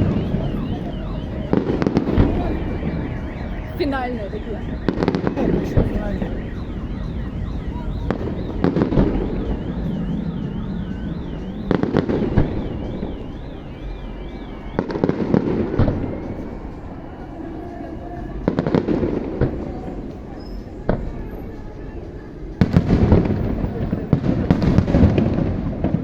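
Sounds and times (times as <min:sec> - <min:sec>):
fireworks crackling bangs: 0:00.0 - 0:16.7, 0:22.6 - 0:26.0
high warbling tone: 0:00.0 - 0:17.1.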